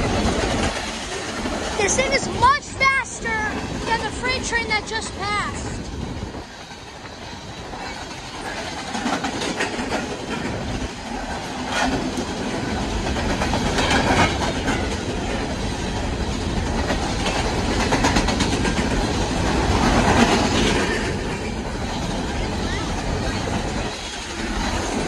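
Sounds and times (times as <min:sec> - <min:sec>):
train rumbling past: 0:00.0 - 0:25.0
wheel clicks over rail joints: 0:07.8 - 0:15.2.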